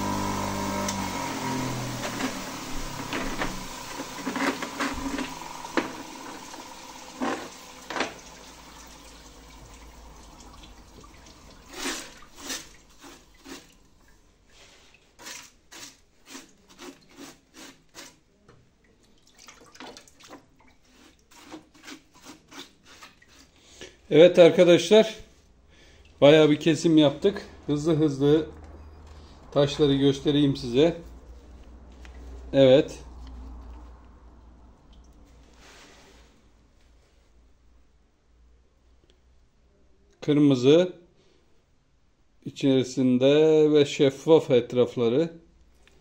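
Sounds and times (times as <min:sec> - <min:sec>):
water dripping and splashing: 0:02.4 - 0:15.5, 0:18.8 - 0:21.3, 0:34.8 - 0:35.4.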